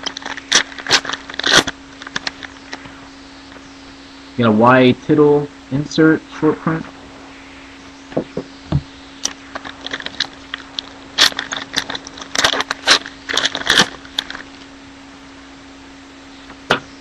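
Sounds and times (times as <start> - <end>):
foil card packs ripping open: 0.0 - 2.8, 9.2 - 14.6
steady low hum: 0.0 - 17.0.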